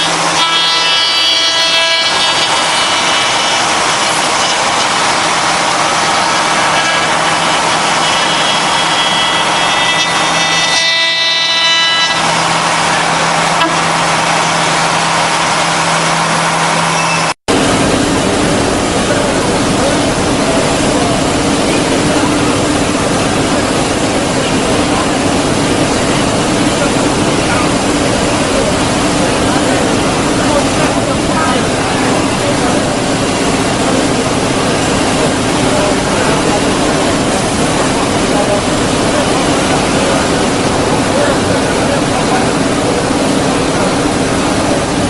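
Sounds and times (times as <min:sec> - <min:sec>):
router spindle cutting wood: 0:00.0 - 0:17.0.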